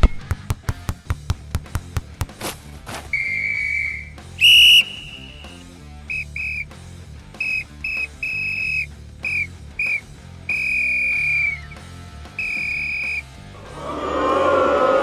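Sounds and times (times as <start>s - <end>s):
referee's whistle blasts: 3.1s - 6.7s, 7.4s - 13.3s.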